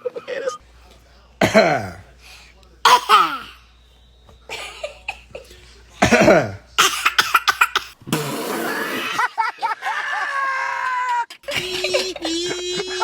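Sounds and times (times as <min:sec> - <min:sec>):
person coughing: 0:01.4 - 0:02.0, 0:02.9 - 0:03.6, 0:04.5 - 0:09.2.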